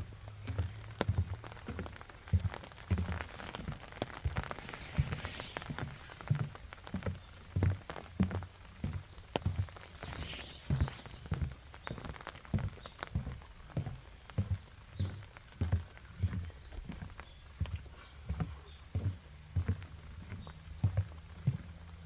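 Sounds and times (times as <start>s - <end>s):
footsteps walking: 0.0s - 21.8s
rain dripping and pattering: 0.0s - 22.0s.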